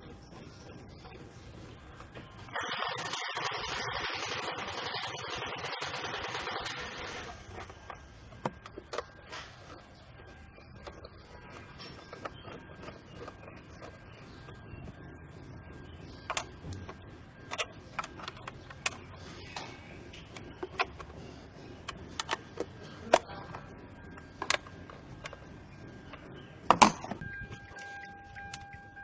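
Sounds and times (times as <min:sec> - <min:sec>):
hand tools clicking and clacking: 0:16.3 - 0:25.5.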